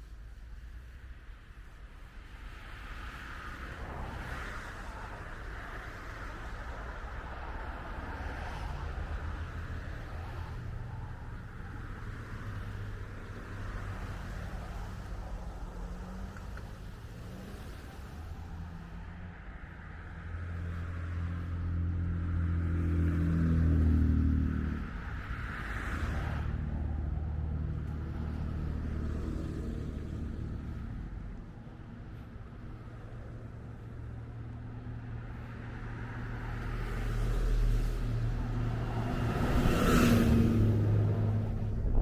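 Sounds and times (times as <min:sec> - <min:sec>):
motor vehicles driving past: 0:02.9 - 0:42.0
vehicle approaching: 0:13.6 - 0:42.0.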